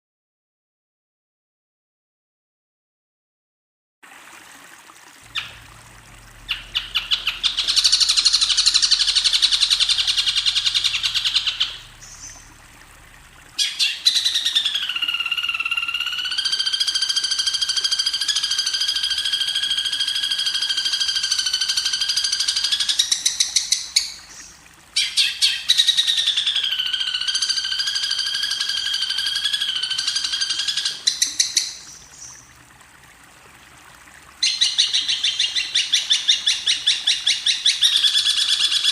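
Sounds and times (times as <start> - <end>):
songbird chattering trills: 6.3 - 12.5, 13.6 - 16.4.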